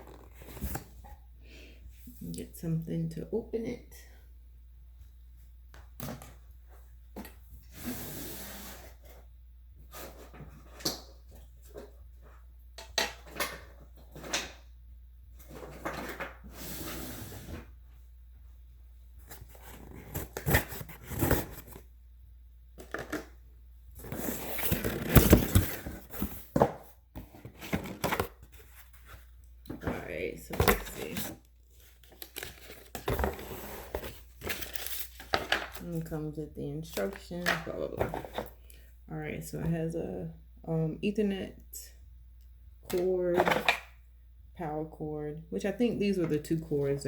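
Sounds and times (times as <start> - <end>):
cardboard scraping and sliding: 24.0 - 28.2, 32.6 - 34.8
packaging rustling: 30.7 - 35.8.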